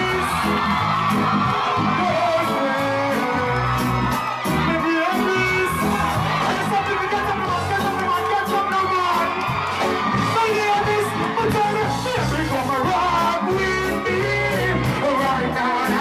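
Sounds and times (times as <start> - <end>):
crowd whooping: 0.0 - 16.0
dancehall music: 0.0 - 16.0.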